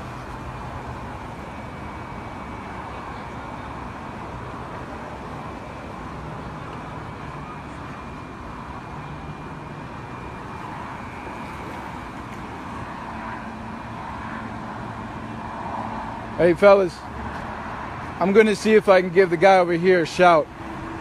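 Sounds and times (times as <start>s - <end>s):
faint high whine: 0.0s - 17.1s
constant noisy hiss: 0.0s - 21.0s
vehicle engines running: 0.0s - 21.0s.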